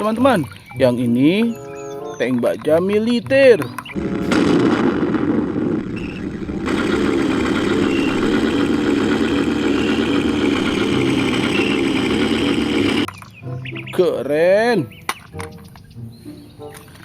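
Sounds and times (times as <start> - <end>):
heavy tank engine running: 4.0 - 13.1.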